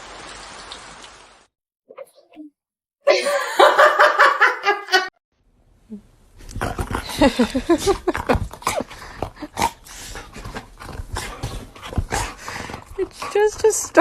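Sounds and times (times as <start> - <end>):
dog growling and grumbling: 6.4 - 14.0.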